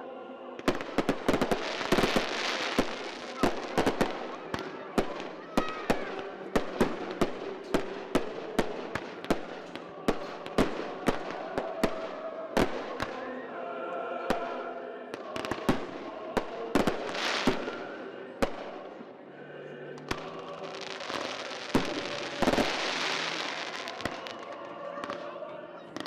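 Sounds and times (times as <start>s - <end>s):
fireworks crackling hiss: 0.8s - 4.1s, 15.2s - 18.9s, 20.0s - 24.3s
fireworks bangs: 20.1s - 25.3s.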